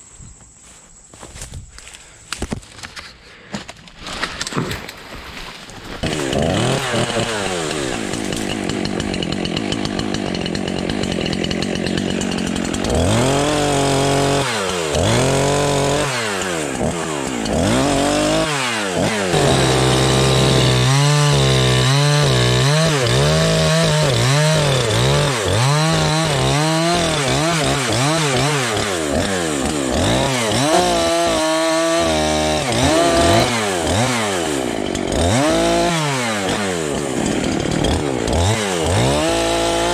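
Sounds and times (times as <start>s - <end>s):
chainsaw engine revving: 5.7s - 39.9s.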